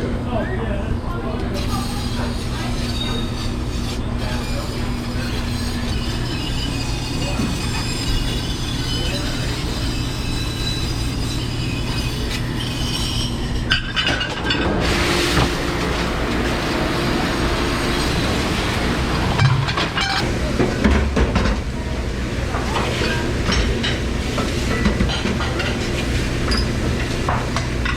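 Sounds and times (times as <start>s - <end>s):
kitchen equipment hum and hiss: 0.0s - 27.9s
dishes and metal clattering: 13.7s - 14.8s, 19.4s - 21.6s, 22.5s - 27.9s.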